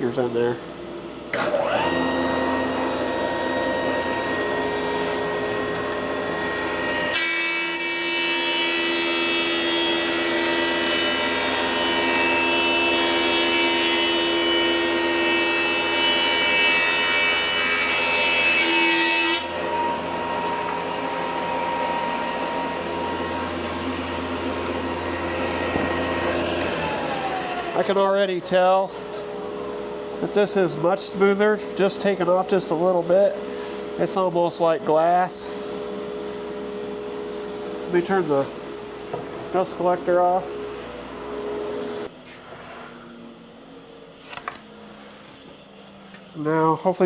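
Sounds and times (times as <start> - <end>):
dust collector running: 0.0 - 47.0
planer cutting board: 1.4 - 28.0
planer running: 1.4 - 28.2.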